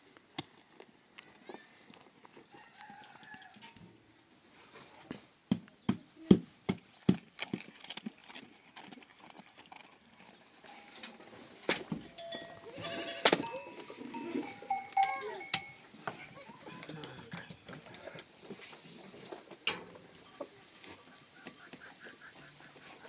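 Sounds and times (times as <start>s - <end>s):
sharp knocks or clinks: 11.9s - 15.8s
goats and sheep bleating: 12.1s - 18.2s, 20.2s - 23.0s.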